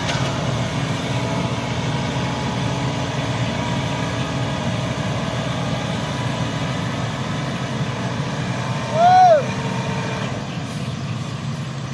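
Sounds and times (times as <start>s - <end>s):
truck engine running: 0.0s - 11.9s.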